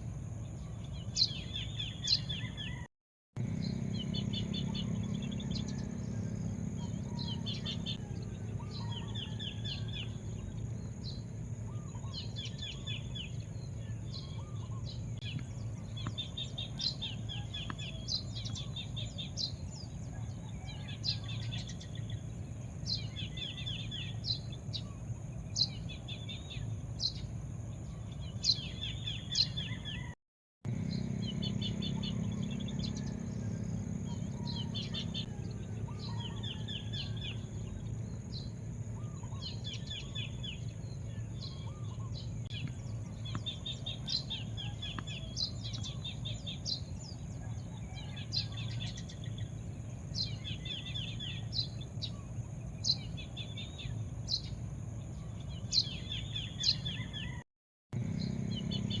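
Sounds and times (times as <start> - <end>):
small birds chirping: 0.4 - 57.4, 58.0 - 59.0
low background rumble: 3.4 - 30.0, 30.7 - 55.7.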